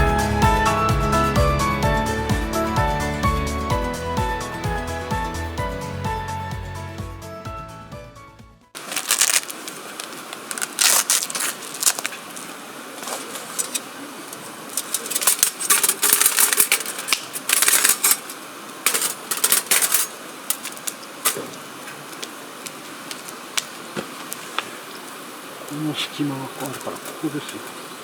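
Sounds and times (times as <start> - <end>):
rustling of things handled: 8.8 - 24.8.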